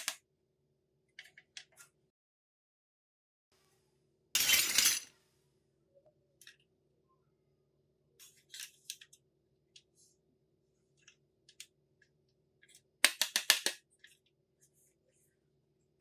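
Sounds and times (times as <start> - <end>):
toy kitchen pieces clicking: 13.0 - 13.8.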